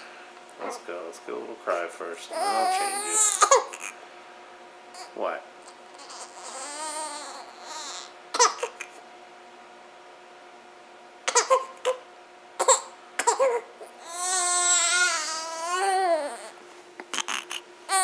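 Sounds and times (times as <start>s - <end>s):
baby crying: 2.3s - 4.0s, 5.0s - 8.9s, 12.6s - 18.0s.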